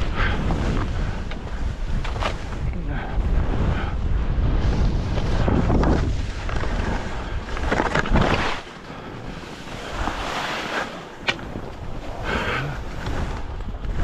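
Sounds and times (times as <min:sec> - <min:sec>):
wind rumbling on microphone: 0:00.0 - 0:14.0
skis swishing through snow: 0:04.4 - 0:14.0.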